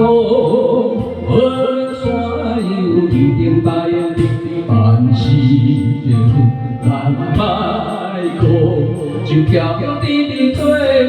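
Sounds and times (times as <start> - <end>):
karaoke backing music: 0.0 - 11.0.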